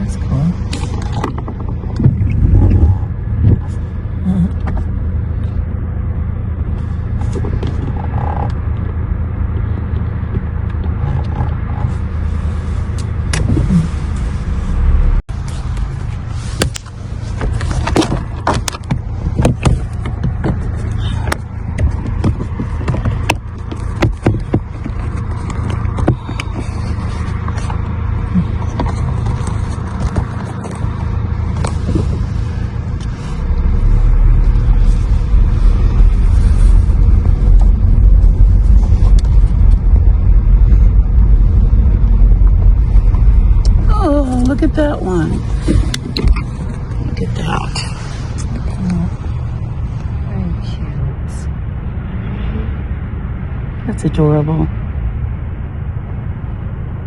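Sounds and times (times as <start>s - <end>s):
car engine and tyres rumble: 0.0s - 57.0s
sharp clicks and knocks: 0.6s - 3.8s, 16.6s - 28.0s.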